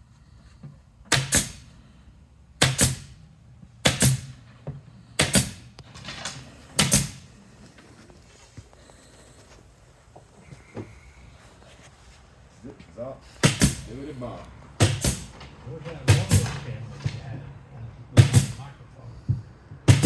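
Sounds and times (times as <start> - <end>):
sharp double knocks: 13.4 - 13.9, 14.8 - 15.4.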